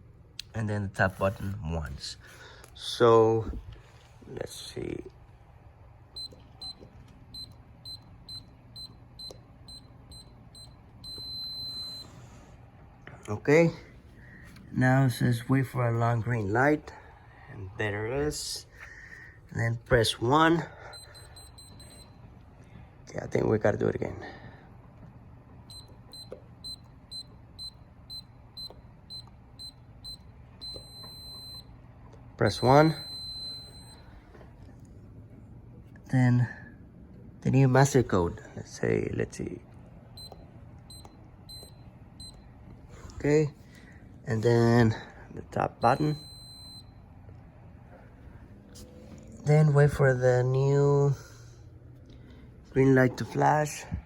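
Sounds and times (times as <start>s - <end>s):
keypad lock beeps: 7.4s - 12.1s, 21.0s - 22.1s, 25.7s - 31.7s, 40.2s - 42.4s.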